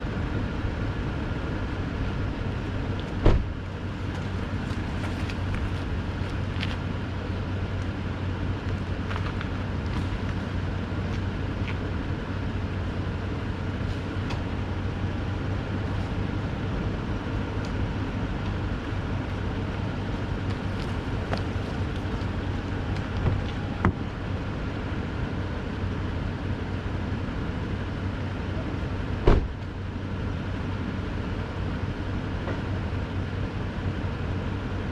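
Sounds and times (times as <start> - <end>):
truck engine running low: 0.0 - 34.9.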